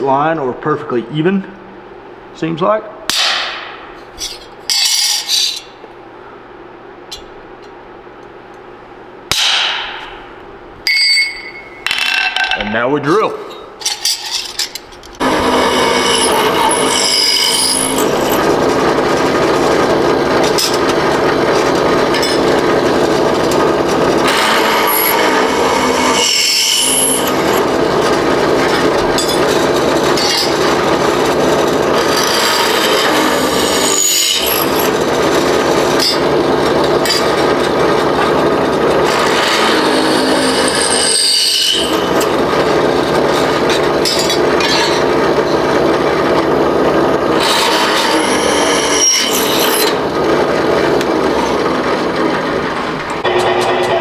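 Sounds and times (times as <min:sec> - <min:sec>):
electric drill cutting steel sheet: 0:15.2 - 0:54.0.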